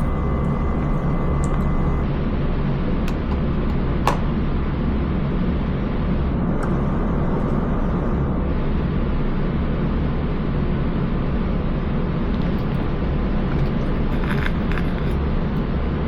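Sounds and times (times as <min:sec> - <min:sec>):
furnace rumbling: 0:00.0 - 0:10.9, 0:12.0 - 0:16.0.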